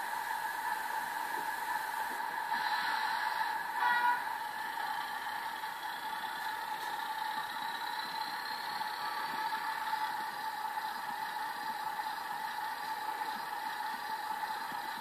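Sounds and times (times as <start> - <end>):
thin engine drone from speaker: 0.0 - 4.6.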